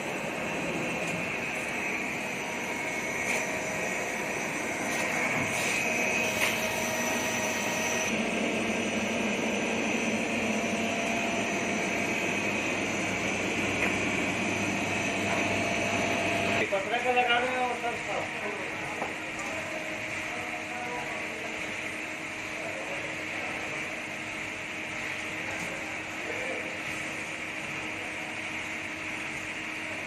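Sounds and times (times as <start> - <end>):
lathe machine whine and hum: 0.0 - 30.0.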